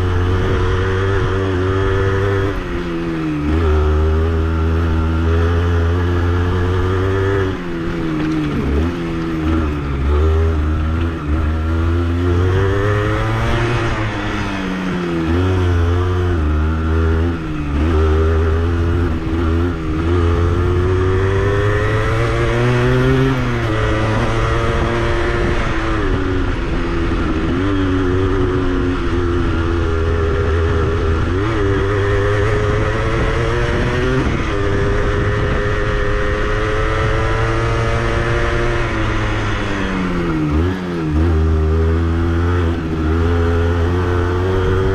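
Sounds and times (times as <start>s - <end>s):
two-stroke motorcycle engine revving: 0.0s - 44.9s.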